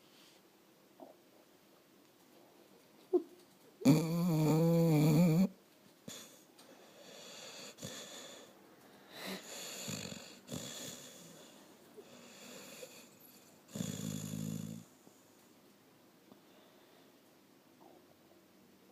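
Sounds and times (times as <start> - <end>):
person snoring: 3.8 - 5.5.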